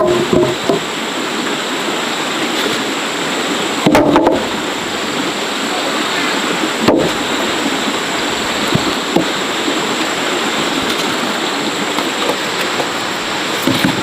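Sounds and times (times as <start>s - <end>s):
soft knocks: 0.0s - 0.9s
rushing hiss: 0.0s - 14.0s.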